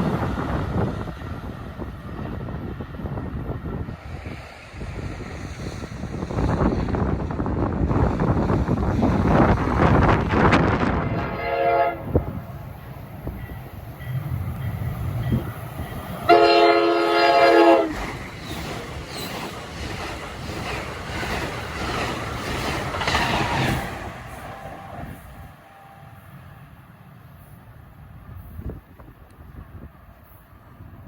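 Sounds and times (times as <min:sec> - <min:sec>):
train horn blasts: 0:10.8 - 0:12.6, 0:16.2 - 0:18.0
train wheels clattering on rail: 0:12.2 - 0:25.6.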